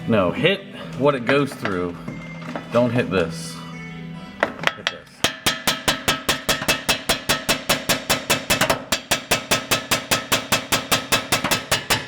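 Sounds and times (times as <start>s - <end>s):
hammer striking metal: 4.4s - 12.0s.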